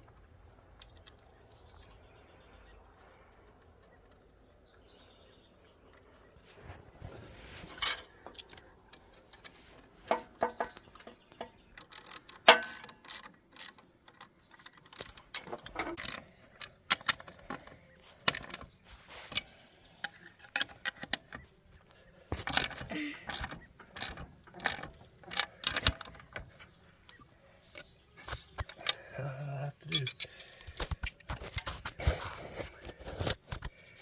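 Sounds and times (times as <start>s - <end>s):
metal tools clicking and clanking: 7.6s - 18.7s, 19.3s - 21.5s, 22.3s - 31.9s.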